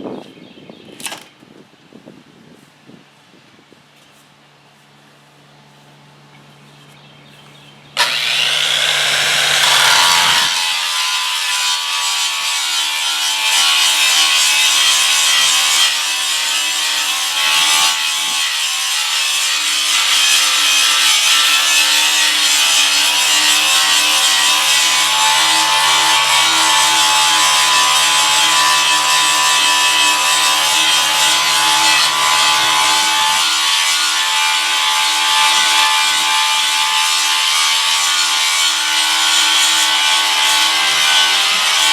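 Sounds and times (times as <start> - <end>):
electric power tool running: 8.0 - 16.4, 21.2 - 41.9.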